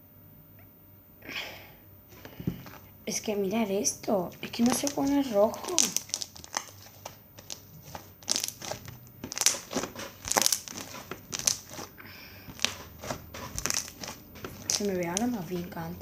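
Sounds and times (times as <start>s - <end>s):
slime crackling and squishing: 4.5s - 15.6s.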